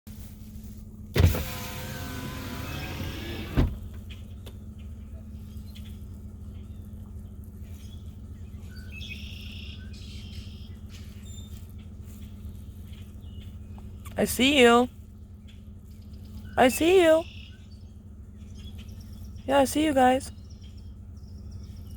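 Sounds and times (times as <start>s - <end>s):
steady low hum: 0.1s - 21.9s
small motor whirring: 1.2s - 3.8s
bird chirps: 4.0s - 14.3s, 15.0s - 19.5s, 20.3s - 21.9s.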